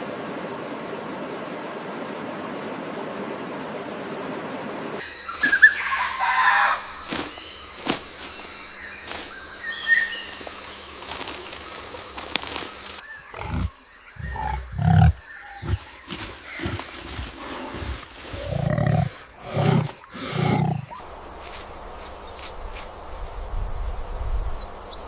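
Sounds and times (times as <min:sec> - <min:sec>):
insect-like hum: 0:00.0 - 0:25.0
large animal growling: 0:13.2 - 0:21.0.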